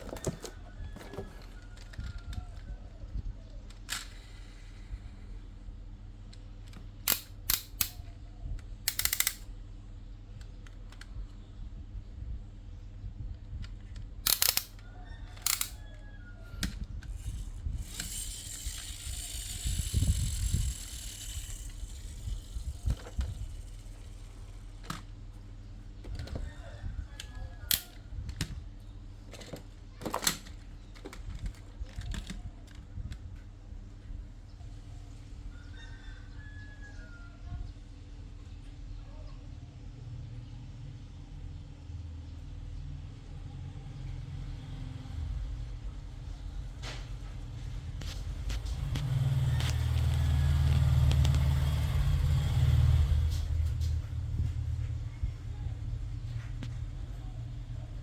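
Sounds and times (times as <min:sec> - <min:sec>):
packaging rustling: 0:00.0 - 0:01.7
plastic toy clicks and knocks: 0:06.7 - 0:08.1, 0:08.9 - 0:09.5, 0:14.2 - 0:14.8, 0:15.4 - 0:15.8, 0:16.6 - 0:25.1, 0:27.7 - 0:28.6.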